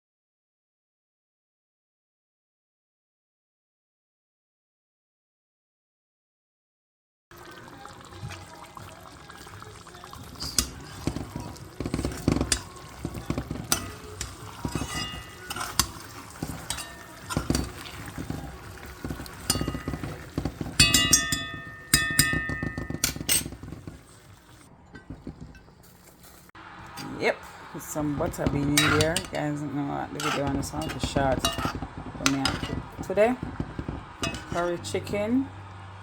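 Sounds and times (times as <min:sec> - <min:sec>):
utensil clinking against pot: 0:08.2 - 0:35.3.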